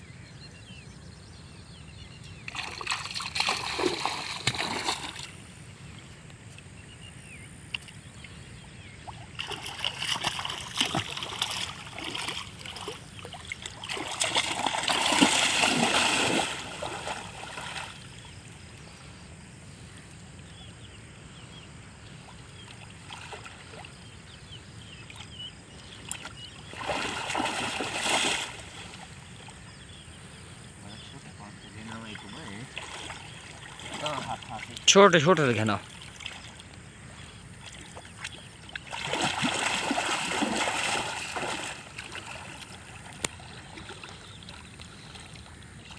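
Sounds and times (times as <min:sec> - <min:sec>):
river water splashing: 0:02.1 - 0:20.5, 0:21.4 - 0:30.0, 0:31.0 - 0:45.9
steady water wash: 0:02.6 - 0:05.4, 0:09.4 - 0:18.1, 0:26.7 - 0:28.9, 0:38.8 - 0:44.2.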